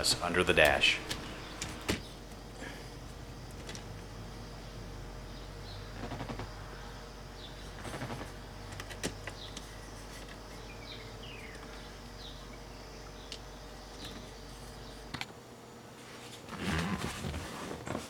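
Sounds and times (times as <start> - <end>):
switch and wiring rattling: 0.0 - 2.1
steady low hum: 0.0 - 16.2.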